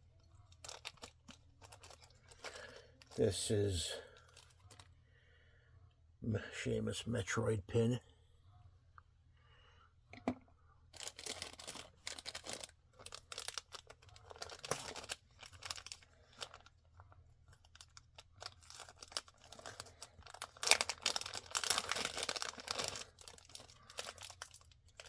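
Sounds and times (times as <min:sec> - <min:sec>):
packaging crinkling and tearing: 0:00.4 - 0:03.2, 0:11.0 - 0:25.0.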